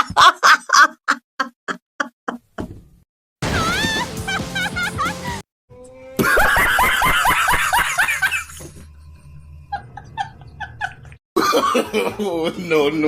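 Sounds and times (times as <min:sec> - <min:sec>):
rhythmic ha-ha laughter: 0:03.8 - 0:05.4, 0:06.2 - 0:08.7, 0:09.7 - 0:12.6.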